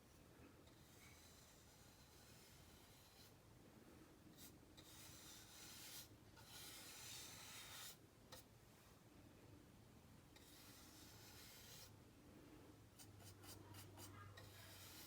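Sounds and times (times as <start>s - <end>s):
paintbrush scratching on plastic: 0.6s - 3.4s, 4.4s - 8.0s, 10.4s - 12.0s, 13.0s - 15.0s.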